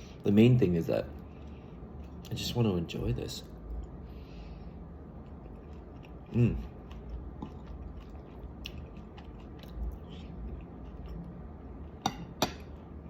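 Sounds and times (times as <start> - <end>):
person chewing crunchy food: 5.1 - 12.6.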